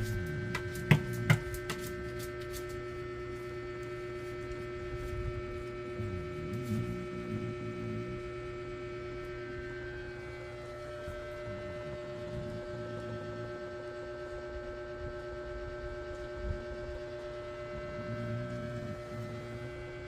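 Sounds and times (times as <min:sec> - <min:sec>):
steady electrical hum: 0:00.0 - 0:20.0
person snoring softly: 0:05.9 - 0:08.3, 0:11.3 - 0:13.6, 0:17.7 - 0:20.0.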